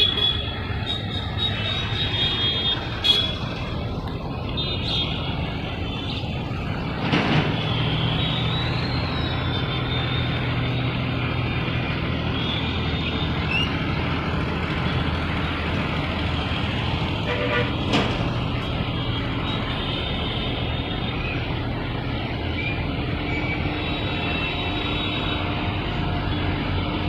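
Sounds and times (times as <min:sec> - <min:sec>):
locomotive horn: 0:00.0 - 0:03.6, 0:16.5 - 0:18.0, 0:23.6 - 0:27.0
locomotive humming: 0:00.0 - 0:27.0.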